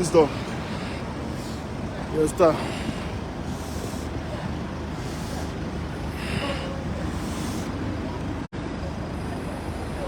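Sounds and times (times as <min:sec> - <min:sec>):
road traffic rumble: 0:00.0 - 0:10.0
hiss: 0:01.4 - 0:07.9.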